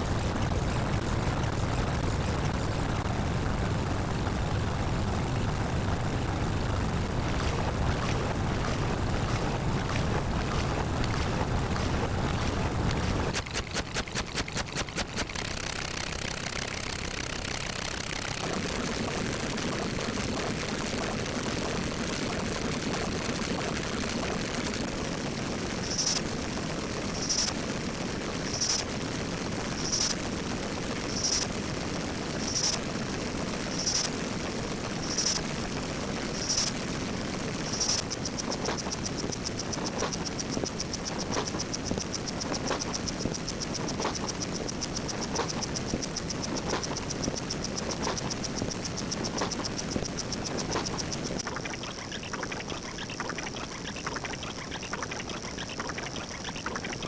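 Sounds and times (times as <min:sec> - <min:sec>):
noisy drone: 0:24.9 - 0:51.5
short high beeps: 0:25.7 - 0:26.2, 0:31.1 - 0:31.5, 0:32.4 - 0:32.8, 0:37.7 - 0:51.4.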